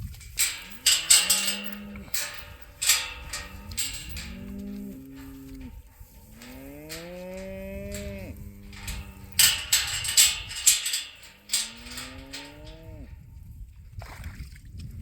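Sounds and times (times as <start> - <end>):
cattle mooing: 0.4 - 13.1.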